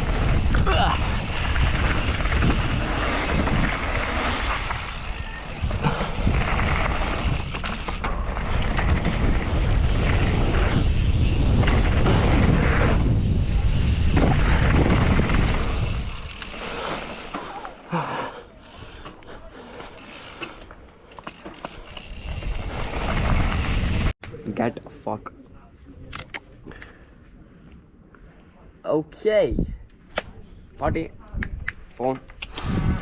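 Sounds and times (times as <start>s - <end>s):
wind buffeting microphone: 0.0s - 16.9s, 32.5s - 33.0s.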